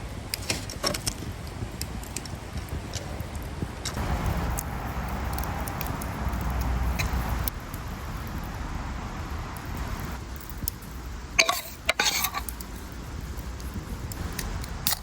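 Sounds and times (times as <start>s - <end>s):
steady low rumble: 0.0s - 15.0s
utensils clinking on dishware: 11.4s - 12.5s.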